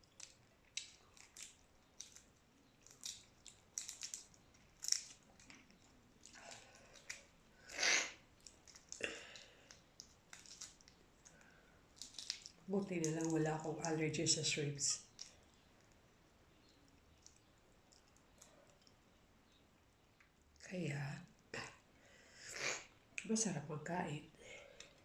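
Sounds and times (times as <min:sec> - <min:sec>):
chewing and mouth smacks: 0:00.0 - 0:07.3, 0:08.4 - 0:14.0, 0:16.6 - 0:19.0.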